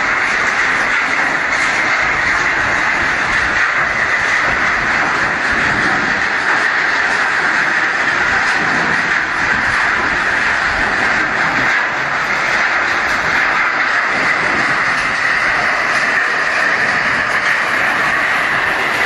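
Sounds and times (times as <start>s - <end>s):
scrap crusher clattering and grinding: 0.0s - 19.0s.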